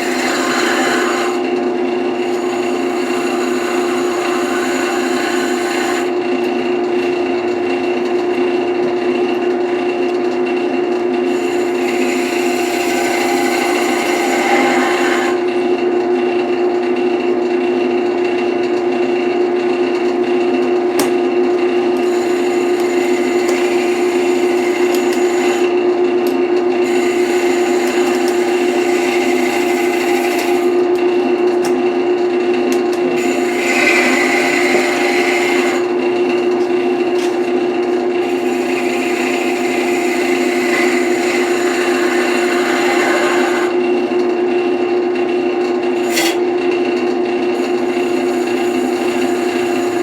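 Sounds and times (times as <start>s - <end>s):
turning tool scraping wood: 0.0s - 6.6s, 11.2s - 15.7s, 21.8s - 31.8s, 32.6s - 43.9s, 45.9s - 46.5s, 47.6s - 50.0s
wood lathe motor hum: 0.0s - 50.0s.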